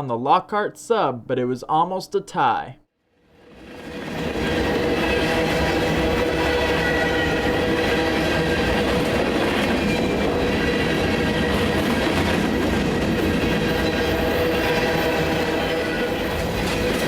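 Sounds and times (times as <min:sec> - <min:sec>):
freight train wheels rumbling on rails: 0:03.5 - 0:17.0.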